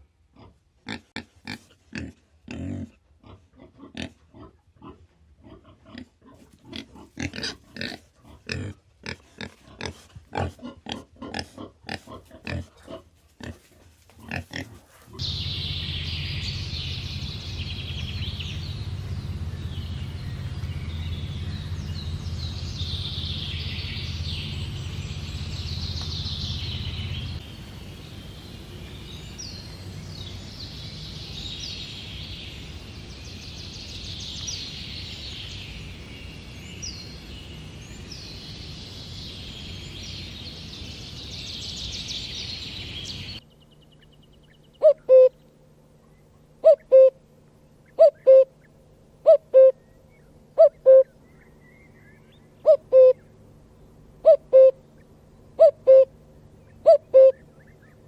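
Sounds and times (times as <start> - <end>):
steady low hum: 2.1 - 58.0
high chirping calls: 15.2 - 45.6, 54.2 - 58.0
animal calls: 44.8 - 45.4, 46.6 - 51.6, 52.2 - 53.3, 54.2 - 55.0, 55.6 - 58.0.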